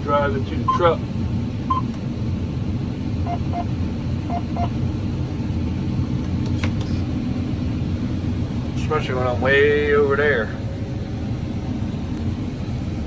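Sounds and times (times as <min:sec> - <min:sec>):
combine harvester drone: 0:00.0 - 0:13.0
short electronic beeps: 0:03.3 - 0:03.7, 0:04.3 - 0:04.7.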